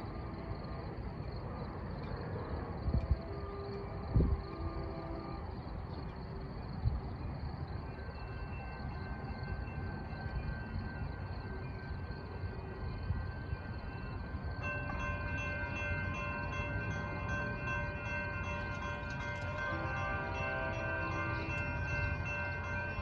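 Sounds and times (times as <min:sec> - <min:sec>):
train rumbling: 0:00.0 - 0:23.0
high metallic ringing: 0:08.5 - 0:23.0.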